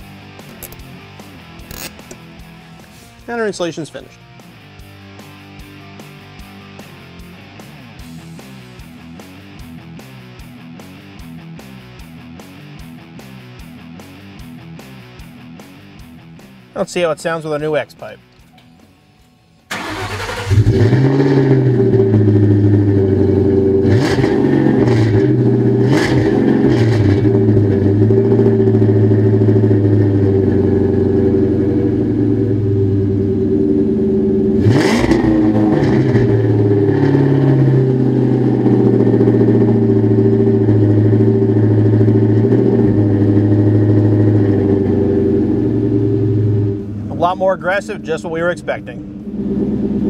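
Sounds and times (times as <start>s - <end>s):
engine starting and idling: 19.7s - 23.1s
engine throttle blips: 19.7s - 50.0s.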